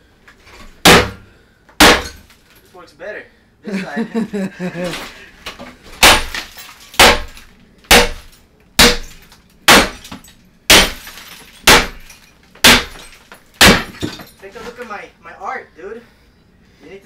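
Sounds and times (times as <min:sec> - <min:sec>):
axe striking bathtub: 0:00.8 - 0:01.2, 0:01.8 - 0:02.2, 0:06.0 - 0:14.2.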